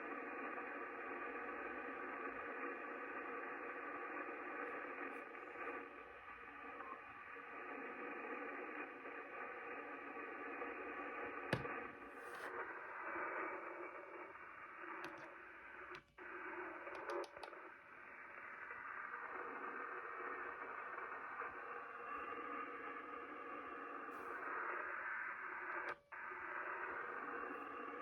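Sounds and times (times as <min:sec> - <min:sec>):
radio receiver hiss: 0:00.0 - 0:28.0
sharp clicks: 0:16.9 - 0:17.6.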